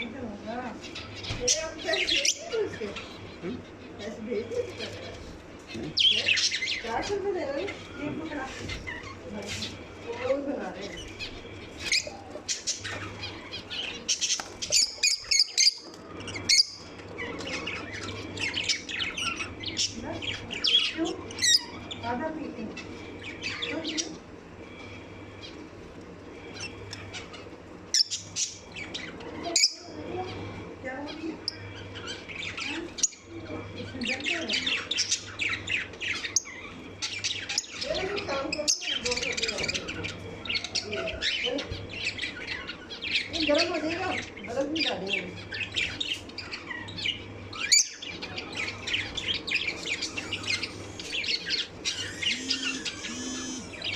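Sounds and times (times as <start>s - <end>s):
lovebirds chirping: 0.0s - 53.9s
steady low hum: 0.0s - 53.9s
bird squawk: 49.0s - 53.9s.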